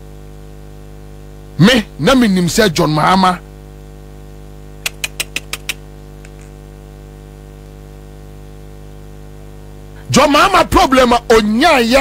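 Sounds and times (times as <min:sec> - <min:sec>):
electrical mains hum: 0:00.0 - 0:12.0
sharp clicks: 0:04.8 - 0:06.5.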